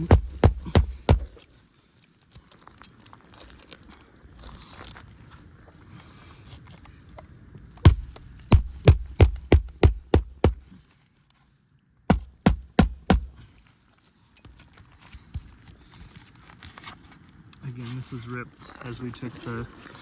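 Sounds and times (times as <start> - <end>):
hammer driving roofing nails: 0.0 - 1.4, 7.9 - 10.7, 12.1 - 13.4.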